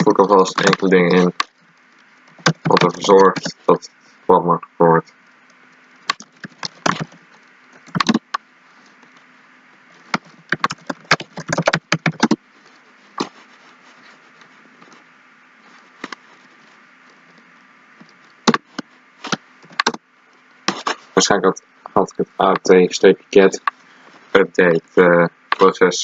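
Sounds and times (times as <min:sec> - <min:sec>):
keyboard typing: 0:00.0 - 0:01.5, 0:02.4 - 0:03.6, 0:06.0 - 0:07.2, 0:07.8 - 0:08.4, 0:10.1 - 0:12.4, 0:18.5 - 0:20.0
faint steady hum: 0:00.0 - 0:26.0.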